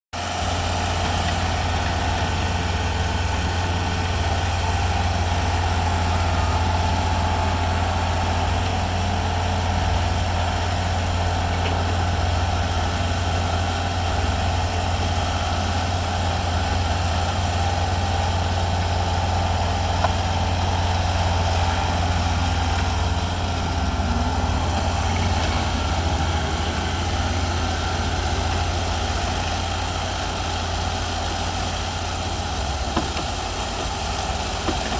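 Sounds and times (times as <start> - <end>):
heavy equipment engines humming: 0.2 - 34.9.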